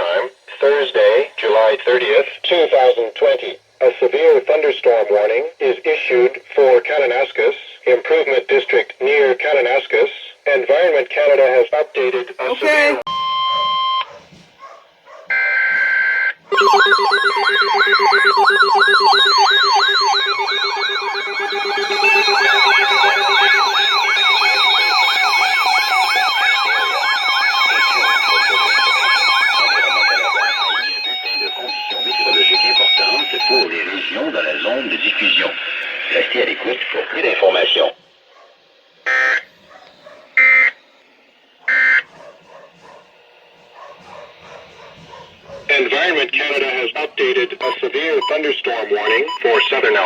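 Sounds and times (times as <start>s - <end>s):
faint radio background: 0.0s - 17.1s, 26.5s - 38.6s, 39.3s - 50.0s
harsh digital buzzes: 15.4s - 37.9s, 38.6s - 50.0s
warbling alert tone: 16.5s - 33.7s.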